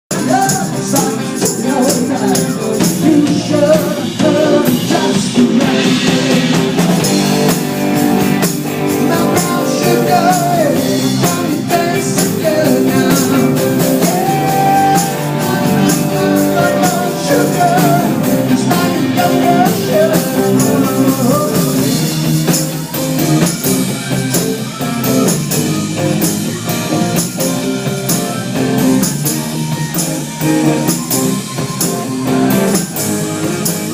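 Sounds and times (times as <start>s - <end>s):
guitar: 0.0s - 33.9s
person singing: 0.1s - 6.9s, 8.4s - 33.9s
rock and roll music: 0.1s - 33.9s.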